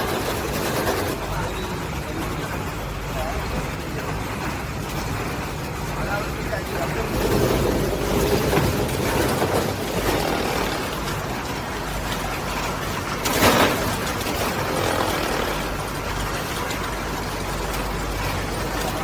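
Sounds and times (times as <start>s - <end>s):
mixing machine running: 0.0s - 19.0s.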